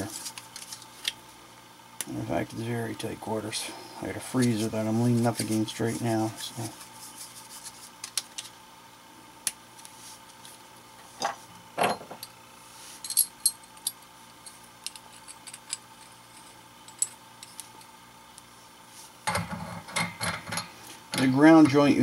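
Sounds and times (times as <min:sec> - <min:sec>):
brass pipe fittings clinking: 0:13.0 - 0:17.7.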